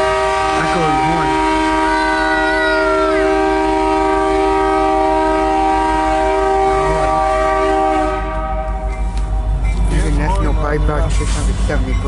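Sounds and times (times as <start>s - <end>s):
locomotive air horn: 0.0s - 11.4s.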